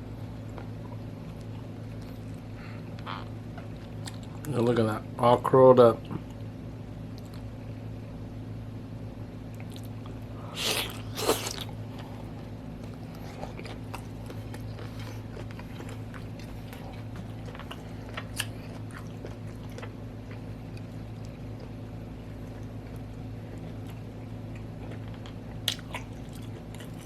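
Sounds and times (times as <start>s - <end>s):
steady low hum: 0.0s - 27.0s
person chewing: 3.0s - 4.5s, 9.6s - 27.0s.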